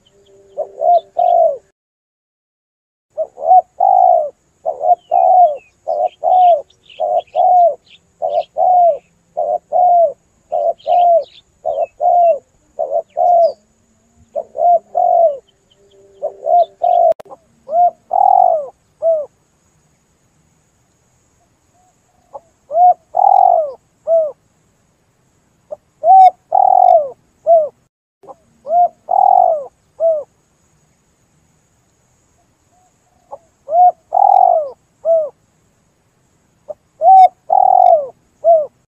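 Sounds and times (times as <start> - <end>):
dove cooing: 0.0 - 1.7, 3.2 - 19.3, 22.2 - 24.4, 25.7 - 30.3, 32.8 - 35.4, 36.7 - 38.9
small birds chirping: 0.0 - 1.7, 3.2 - 24.8, 25.6 - 31.2, 31.8 - 35.4, 36.6 - 38.9.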